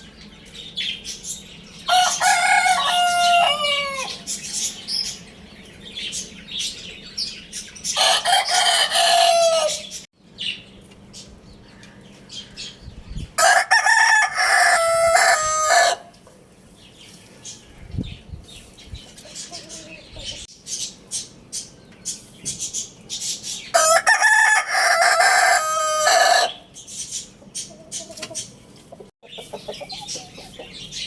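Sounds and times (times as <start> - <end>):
rooster crowing: 1.9 - 4.3, 8.0 - 9.9, 13.4 - 16.1, 23.7 - 26.6
chicken calls: 1.9 - 5.3, 7.9 - 10.1, 13.4 - 16.2, 23.7 - 31.0.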